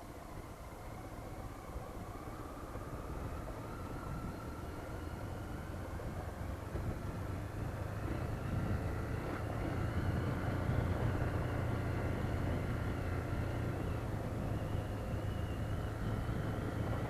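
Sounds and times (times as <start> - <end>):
road and wind noise: 0.0 - 17.0
motorcycle engine running: 5.7 - 17.0.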